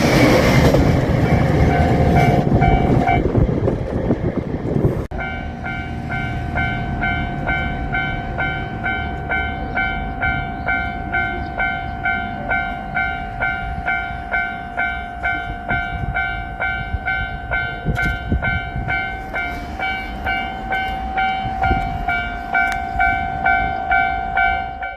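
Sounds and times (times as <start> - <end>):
low train rumble: 0.0 - 24.9
level-crossing alarm bell dinging: 5.1 - 24.9.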